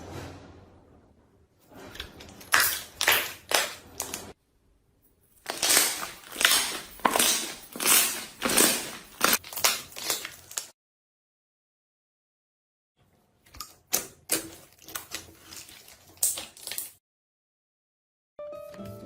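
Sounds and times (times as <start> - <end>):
slime squishing by hand: 1.7 - 4.4, 5.4 - 10.7, 13.3 - 17.0.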